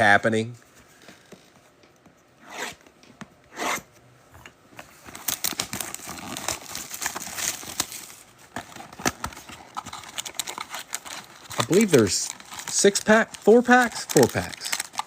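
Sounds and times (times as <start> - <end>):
plastic wrap crinkling: 4.9 - 15.0
plastic wrapping ripping: 5.2 - 15.0.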